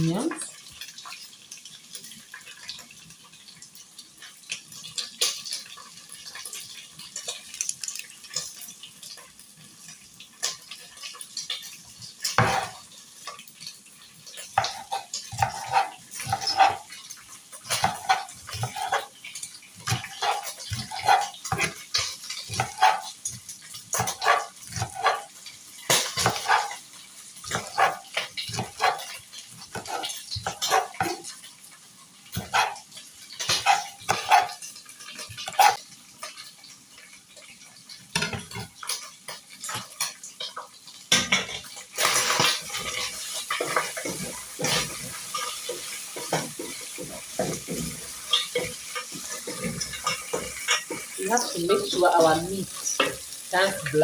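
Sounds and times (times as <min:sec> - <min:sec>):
knife chopping on cutting board: 0:27.5 - 0:29.1.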